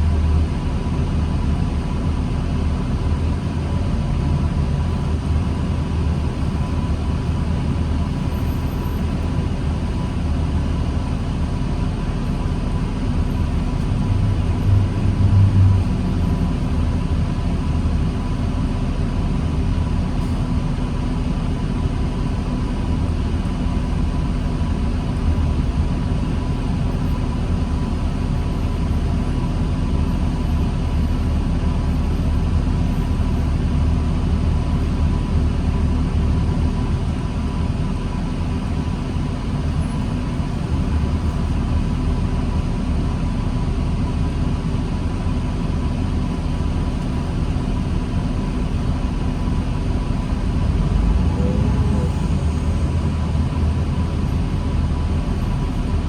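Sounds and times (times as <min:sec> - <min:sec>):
diesel bus engine rumble: 0:00.0 - 0:56.0.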